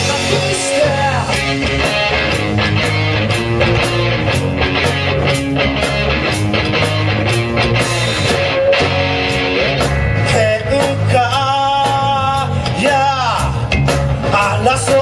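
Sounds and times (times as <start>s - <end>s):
bass guitar: 0.0s - 15.0s
drums: 0.0s - 15.0s
electric guitar lead line: 0.0s - 15.0s.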